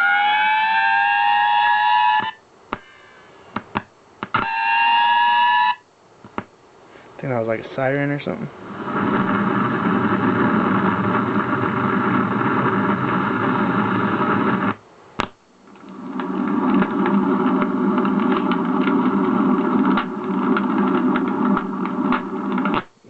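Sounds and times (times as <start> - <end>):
steady mechanical running noise: 15.6 - 23.0.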